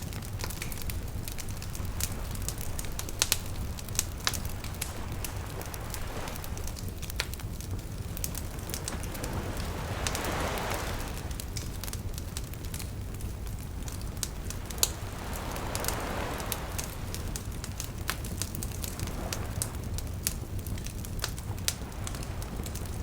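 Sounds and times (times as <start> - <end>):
flames rushing: 0.0 - 23.0
low fire rumble: 0.0 - 23.0
wood crackling and popping: 0.0 - 23.0.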